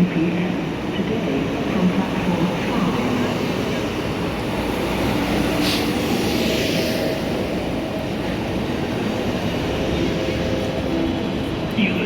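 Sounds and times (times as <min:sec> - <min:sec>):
train rumbling: 0:00.0 - 0:12.0
short air hiss: 0:05.6 - 0:05.9.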